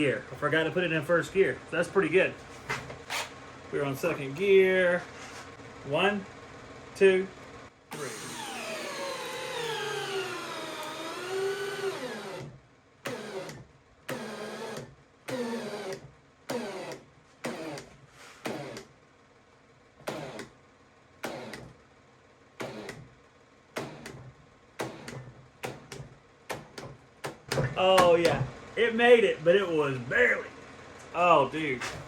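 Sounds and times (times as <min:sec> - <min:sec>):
cordless drill driving a screw: 0:07.9 - 0:18.9, 0:20.0 - 0:20.5, 0:21.2 - 0:21.7, 0:22.6 - 0:23.0, 0:23.8 - 0:24.2, 0:24.8 - 0:26.0.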